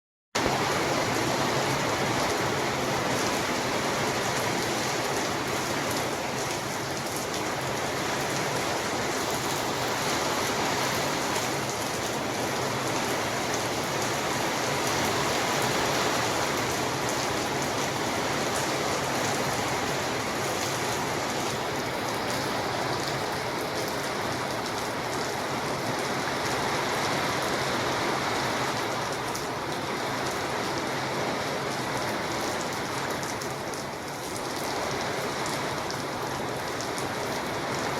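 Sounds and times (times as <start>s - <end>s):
steady rain falling: 0.4s - 37.9s.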